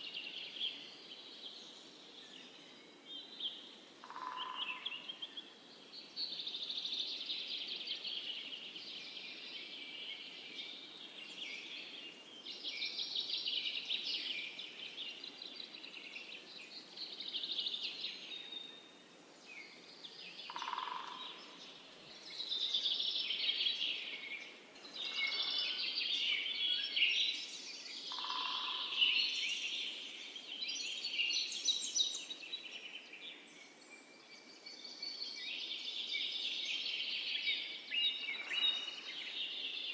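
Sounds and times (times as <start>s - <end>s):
birds chirping and trilling: 20.5s - 29.8s, 37.9s - 39.9s.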